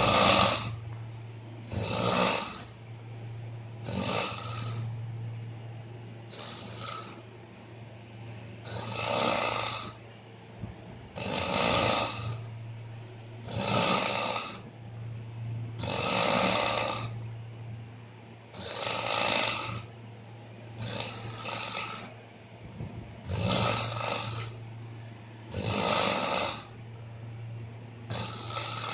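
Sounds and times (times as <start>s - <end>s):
person snoring loudly: 0.0s - 0.8s, 1.7s - 2.7s, 3.8s - 4.9s, 6.3s - 7.2s, 8.6s - 10.0s, 11.2s - 12.5s, 13.4s - 14.6s, 15.8s - 17.2s, 18.6s - 19.9s, 20.8s - 22.1s, 23.2s - 24.6s, 25.5s - 26.8s, 28.1s - 28.9s
steady low hum: 0.0s - 28.9s.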